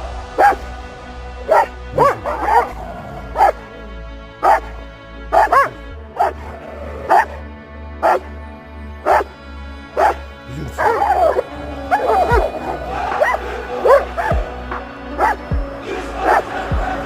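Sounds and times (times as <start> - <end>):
background music with steady beat: 0.0 - 17.0
dog barking: 0.4 - 0.6, 1.5 - 3.6, 4.4 - 4.7, 5.3 - 6.5, 7.1 - 7.4, 8.0 - 8.3, 9.0 - 9.3, 10.0 - 10.2, 10.8 - 12.5, 13.2 - 14.4, 15.2 - 15.4, 16.2 - 16.5.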